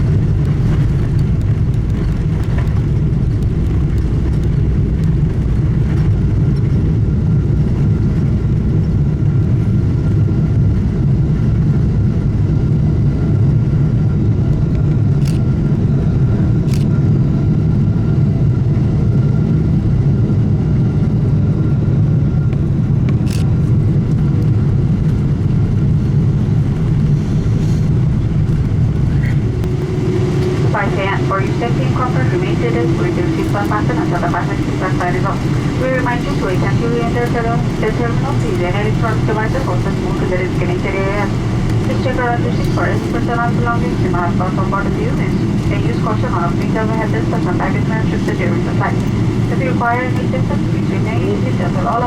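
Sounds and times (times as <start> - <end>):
aircraft cabin engine rumble: 0.0 - 52.0
faint steady whine: 22.1 - 52.0.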